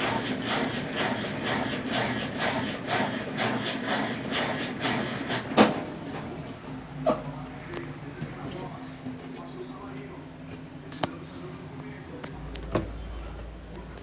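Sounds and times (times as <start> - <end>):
washing machine motor hum: 0.0 - 9.0, 12.2 - 14.0.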